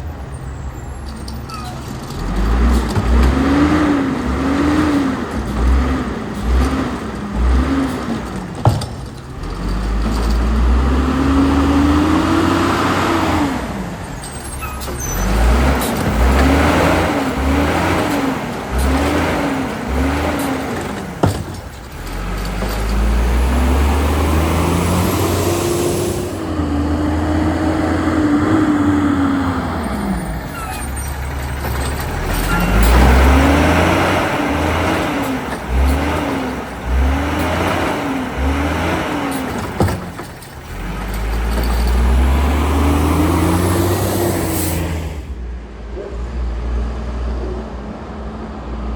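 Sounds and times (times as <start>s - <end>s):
truck engine revving: 0.0s - 45.5s
sharp air release: 25.2s - 26.5s.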